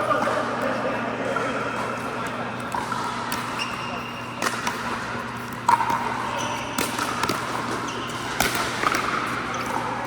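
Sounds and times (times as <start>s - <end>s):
ball bouncing on hard court: 1.3s - 10.0s
paddles hitting plastic ball: 4.4s - 9.8s.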